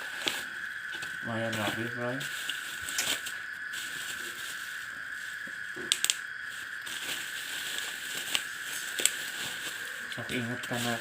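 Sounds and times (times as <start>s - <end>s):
high-pitched whine: 0.0s - 11.0s
packaging rustling: 0.0s - 11.0s
sharp clicks: 5.8s - 6.2s.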